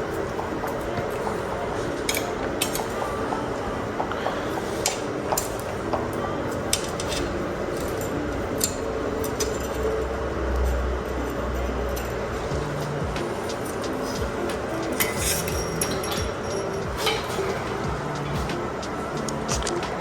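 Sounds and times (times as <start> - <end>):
steady background noise: 0.0 - 20.0
metallic clinks of tools: 11.6 - 17.8.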